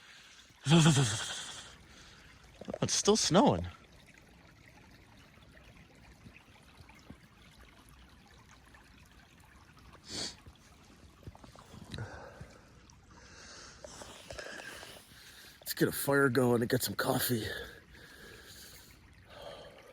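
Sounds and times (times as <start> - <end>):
faint creek trickling: 0.0 - 19.9.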